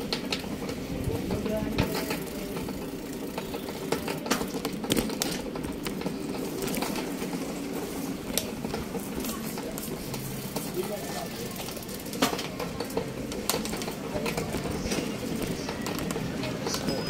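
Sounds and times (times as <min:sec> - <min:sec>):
sharp clicks and knocks: 0:00.0 - 0:07.5, 0:11.6 - 0:17.0.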